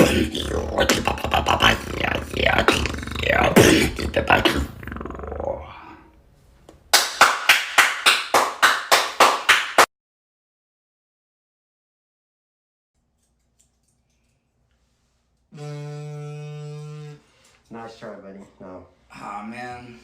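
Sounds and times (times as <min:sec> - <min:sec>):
person beatboxing: 0:00.0 - 0:05.6, 0:15.6 - 0:17.2.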